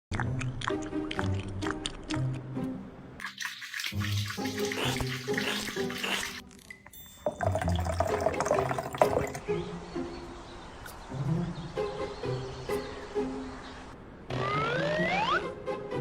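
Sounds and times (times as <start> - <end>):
background music: 0.1 - 16.0
tap water splashing: 3.2 - 6.4, 7.3 - 9.4.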